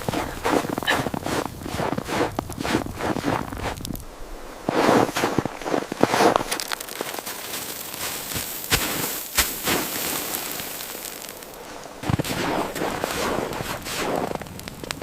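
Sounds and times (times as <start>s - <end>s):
wood fire crackling: 0.0s - 15.0s
rustling handling sound: 4.7s - 14.1s.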